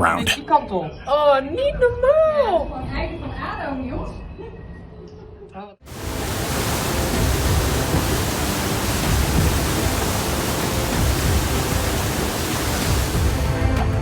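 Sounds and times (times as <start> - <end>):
loud rushing noise with rumble: 5.9 - 13.5.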